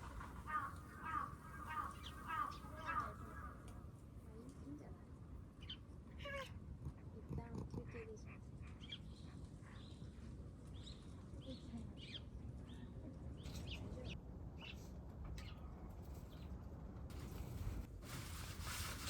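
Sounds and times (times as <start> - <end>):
small birds chirping: 0.0 - 3.7, 7.9 - 14.8.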